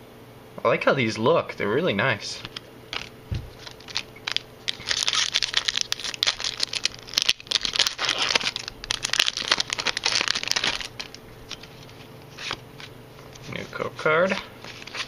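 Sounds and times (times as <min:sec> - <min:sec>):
foil wrapper tearing and crinkling: 0:02.9 - 0:12.6, 0:14.2 - 0:15.0.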